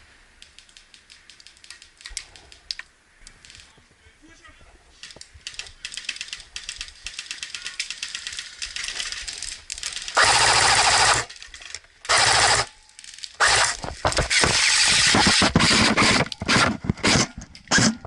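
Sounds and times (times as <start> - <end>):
airsoft guns firing bursts: 10.0 - 11.3, 12.1 - 12.7, 13.4 - 18.0.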